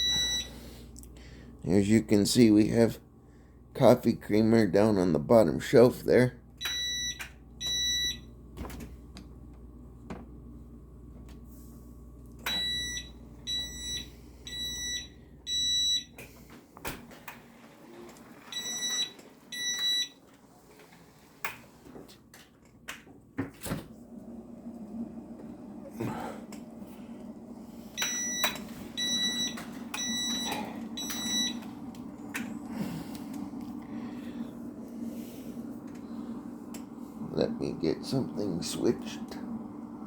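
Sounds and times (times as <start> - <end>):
refrigerator alarm beeping: 0.0 - 0.8, 6.6 - 8.4, 12.4 - 16.4, 18.4 - 20.3, 27.9 - 32.5
low steady hum: 0.0 - 40.0.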